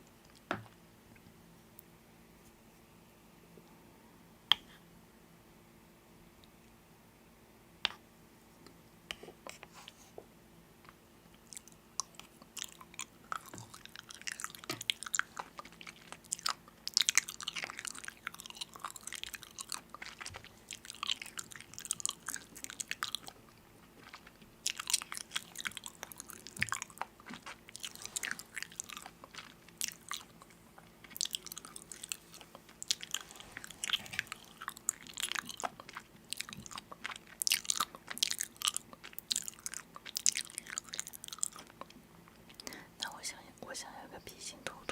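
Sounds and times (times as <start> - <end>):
faint steady hum: 0.0 - 44.9
crunchy food chewing: 11.4 - 42.8.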